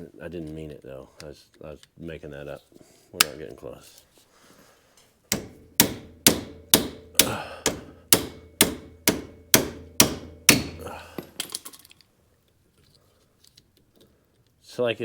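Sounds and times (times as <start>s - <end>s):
hammer blows on metal: 5.3s - 11.1s.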